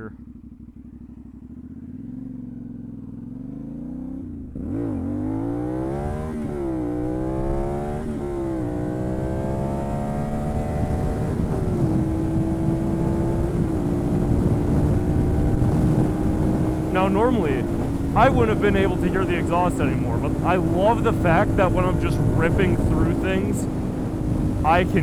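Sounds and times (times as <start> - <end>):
motorcycle engine accelerating: 0.3 - 24.7
wind rush on microphone: 10.8 - 17.0, 17.6 - 19.4, 21.3 - 25.0.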